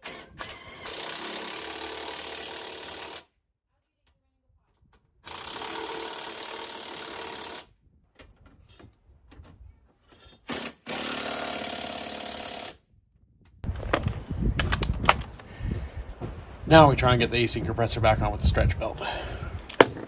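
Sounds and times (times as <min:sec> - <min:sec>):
power wrench running: 0:00.0 - 0:03.2, 0:05.3 - 0:07.7, 0:10.4 - 0:12.8.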